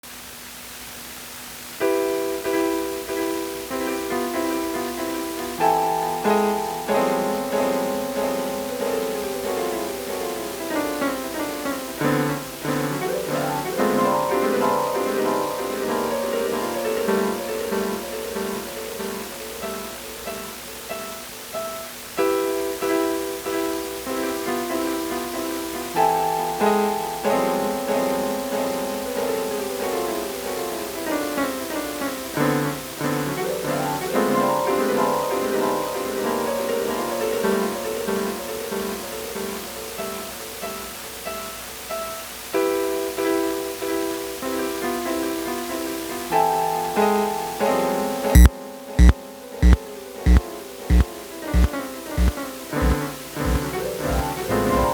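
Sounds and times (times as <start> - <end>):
portable keyboard playing layered phrases: 1.9 - 24.2, 24.8 - 41.0, 46.6 - 54.9
heavy drum-like thump: 48.4 - 51.0, 51.6 - 53.7
plucky keyboard notes looping: 48.4 - 51.0, 51.6 - 54.4.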